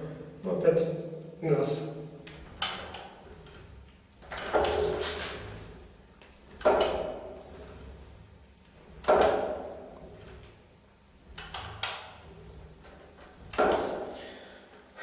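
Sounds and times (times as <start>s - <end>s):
wheel whirring: 2.2s - 15.0s
motor engaging knock: 4.2s - 5.4s, 6.5s - 7.5s, 8.9s - 10.6s, 13.5s - 14.2s.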